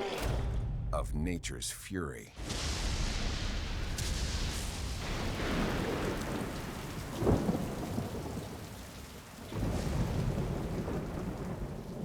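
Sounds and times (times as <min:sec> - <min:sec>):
loud thunderclap: 0:02.4 - 0:08.8, 0:09.4 - 0:12.0
heavy rain: 0:02.4 - 0:12.0.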